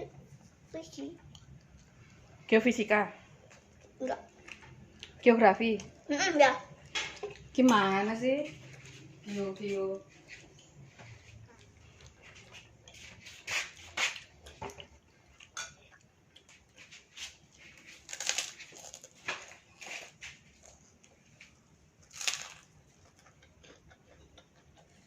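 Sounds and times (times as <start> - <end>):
crunchy food bites: 22.0 - 22.8.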